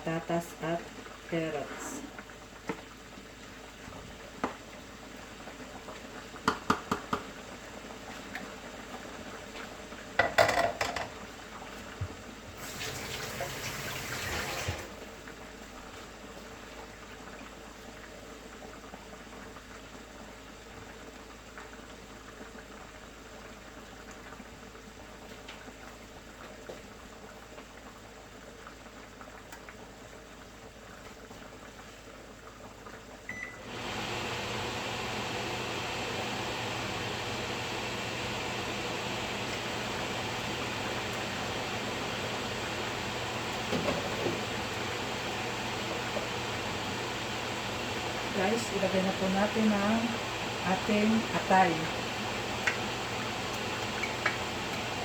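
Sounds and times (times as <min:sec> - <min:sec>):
simmering pot hiss: 0:00.0 - 0:55.0
liquid pouring: 0:12.6 - 0:15.0.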